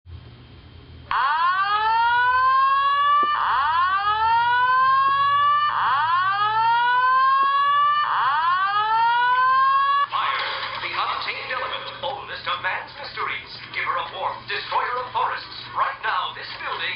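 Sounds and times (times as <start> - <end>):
fire alarm slow whoop tone: 1.1 - 10.1.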